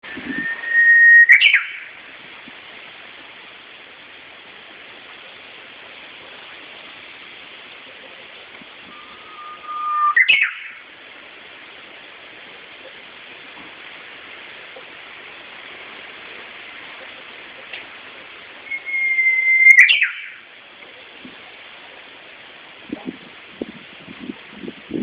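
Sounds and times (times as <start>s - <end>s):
steady hiss: 0.0s - 25.0s
bird singing whistled song: 0.1s - 1.9s, 8.9s - 10.8s, 18.6s - 20.4s.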